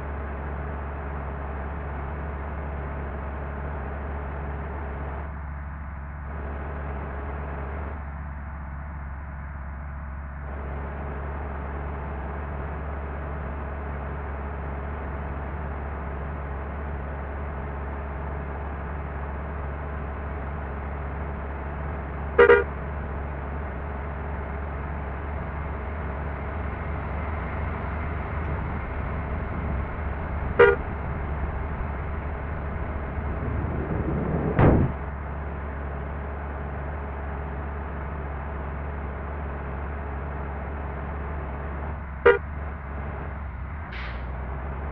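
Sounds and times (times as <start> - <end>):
bus engine drone: 0.0 - 44.9
bus horn honks: 22.4 - 22.8, 30.5 - 31.1
rising whoosh: 32.8 - 35.0.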